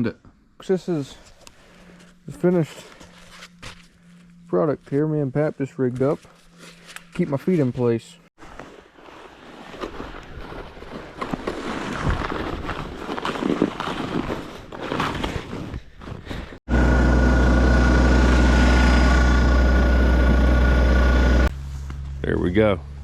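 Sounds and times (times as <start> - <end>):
sled scraping over icy snow: 8.5 - 15.7
engine humming close by: 16.7 - 23.0.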